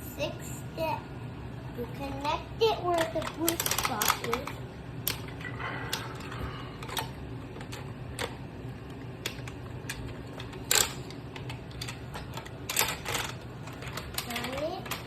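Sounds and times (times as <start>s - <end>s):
plastic toy parts clicking: 3.0s - 5.3s, 9.2s - 15.0s.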